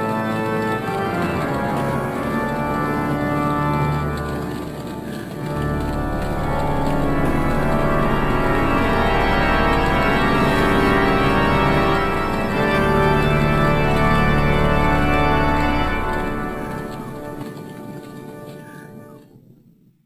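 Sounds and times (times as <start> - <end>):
organ music with held chords: 0.0 - 19.2.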